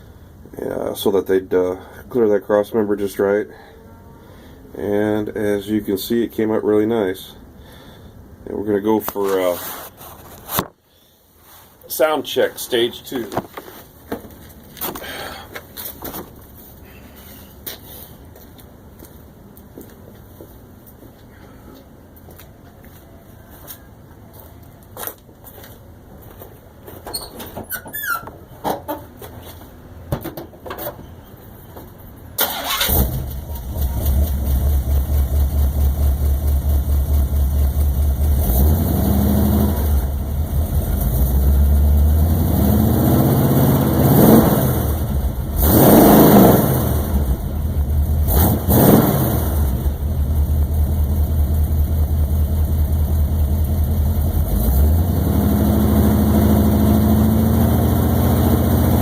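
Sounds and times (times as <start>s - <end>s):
engine starting and idling: 32.4s - 38.2s
engine throttle blips: 32.4s - 59.0s.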